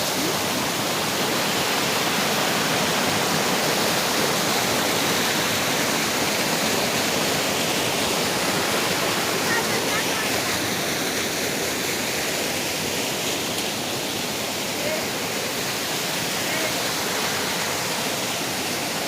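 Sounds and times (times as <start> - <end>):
waterfall roaring: 0.0 - 19.0.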